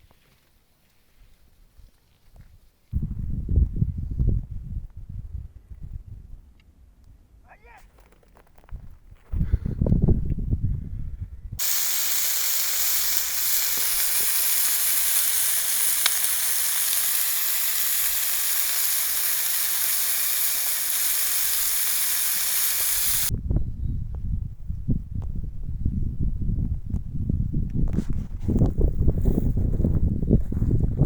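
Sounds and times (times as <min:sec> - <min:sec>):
chicken sizzling on hot stone: 0:11.6 - 0:23.3.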